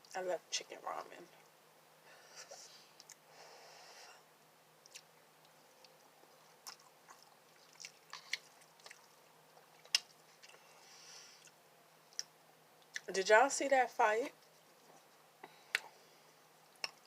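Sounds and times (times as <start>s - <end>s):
person chewing noodles: 4.8s - 13.1s.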